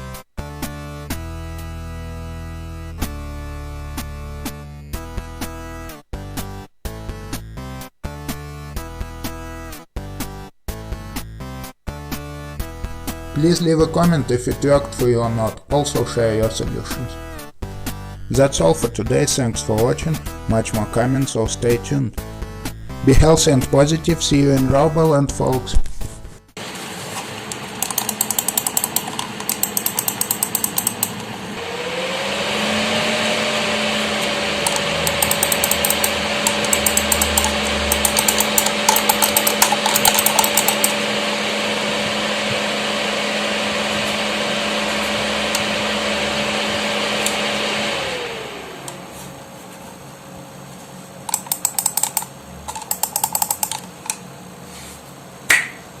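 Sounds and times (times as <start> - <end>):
cooling fan humming: 26.6 - 56.0
fast rattle of clicks: 27.5 - 31.3, 34.6 - 41.0, 51.3 - 54.2
computer keyboard typing: 27.8 - 31.2, 34.7 - 41.0, 51.3 - 53.8.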